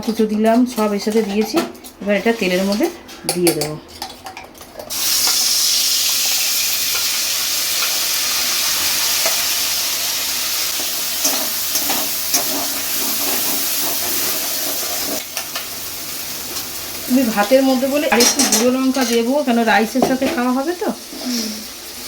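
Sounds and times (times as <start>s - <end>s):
spice paste sizzling in oil: 4.9s - 22.0s.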